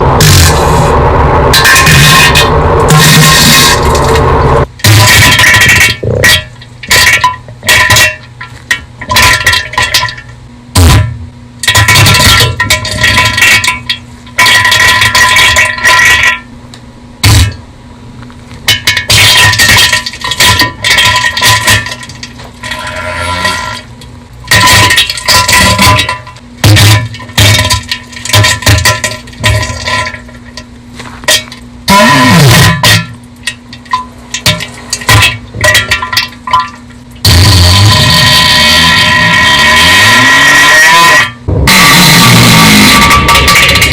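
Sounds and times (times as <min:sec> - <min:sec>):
distorted fart sound effects: 0:00.0 - 0:08.0, 0:10.7 - 0:13.6, 0:17.2 - 0:17.6, 0:22.6 - 0:23.9, 0:24.5 - 0:27.8, 0:31.9 - 0:33.1, 0:37.2 - 0:43.9.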